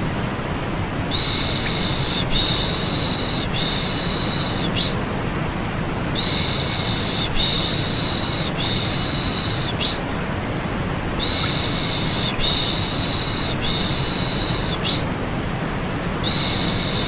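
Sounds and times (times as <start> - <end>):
steady white noise: 0.0 - 17.0.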